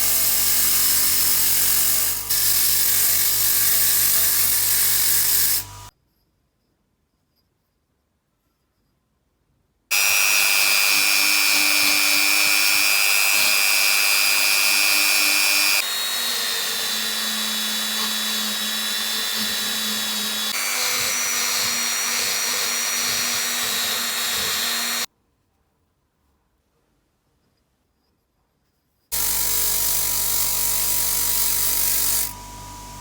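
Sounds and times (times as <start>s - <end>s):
impact wrench motor whining: 9.9s - 25.1s.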